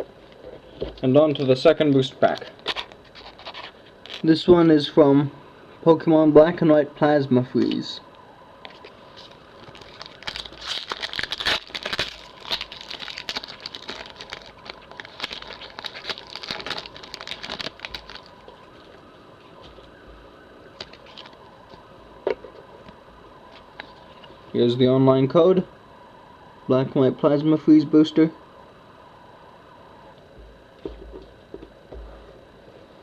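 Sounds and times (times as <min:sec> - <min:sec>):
foil wrapper tearing and crinkling: 0:02.2 - 0:04.3, 0:08.8 - 0:19.0, 0:20.8 - 0:21.4.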